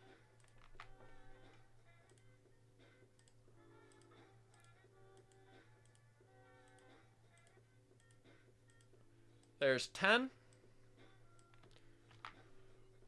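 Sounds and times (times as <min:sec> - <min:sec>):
faint background music: 0:00.0 - 0:13.0
computer mouse clicks: 0:00.4 - 0:02.3, 0:03.2 - 0:09.6.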